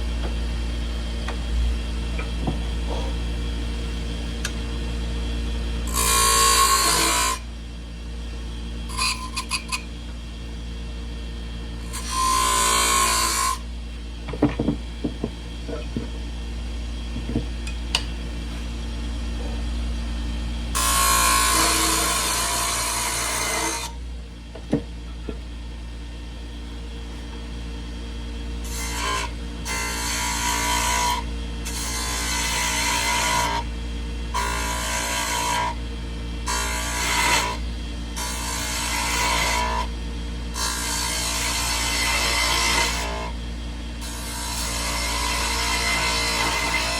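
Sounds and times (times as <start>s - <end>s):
wood lathe motor hum: 5.8s - 7.6s, 8.3s - 10.2s, 11.7s - 13.7s, 20.6s - 25.4s, 28.3s - 46.9s.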